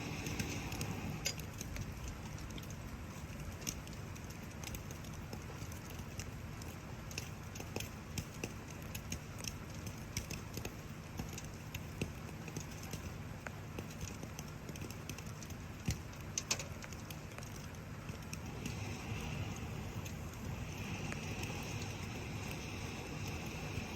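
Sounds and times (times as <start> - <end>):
rain falling: 0.0 - 23.9
wood fire crackling and popping: 0.0 - 23.9.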